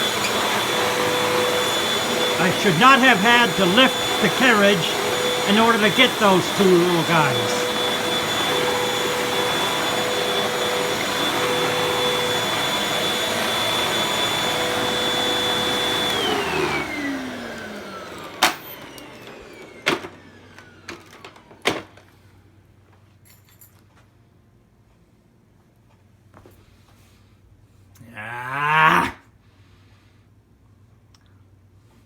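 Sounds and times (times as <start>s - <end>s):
vacuum motor winding down: 0.0s - 21.2s
vacuum cleaner whining: 0.0s - 22.2s.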